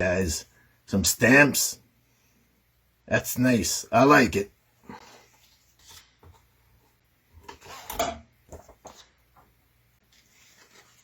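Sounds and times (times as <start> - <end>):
paper rustling: 4.9 - 6.5, 7.4 - 11.0
paper handling noises: 4.9 - 6.6, 8.5 - 11.0.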